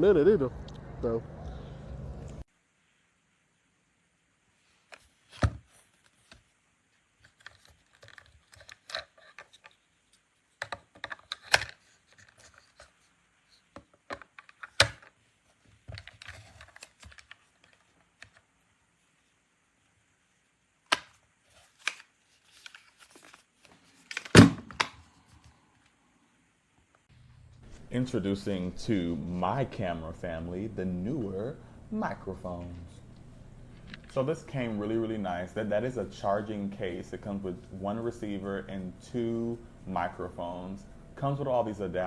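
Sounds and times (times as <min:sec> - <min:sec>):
rustles: 0:21.0 - 0:24.4.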